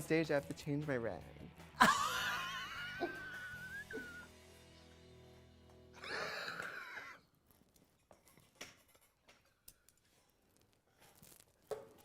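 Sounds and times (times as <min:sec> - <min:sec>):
breathy wheezing laugh: 0:01.8 - 0:04.3, 0:06.0 - 0:07.3.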